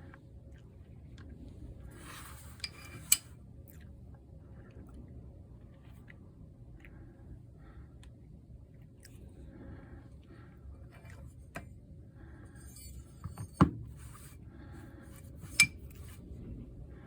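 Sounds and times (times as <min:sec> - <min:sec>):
tools and parts handled: 0:02.1 - 0:03.3, 0:15.4 - 0:16.1.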